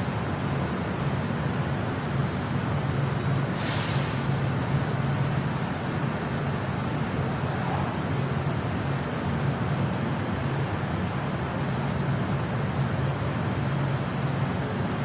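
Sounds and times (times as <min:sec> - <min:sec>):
train car rumbling: 0:00.0 - 0:15.0
short hiss: 0:03.6 - 0:04.4.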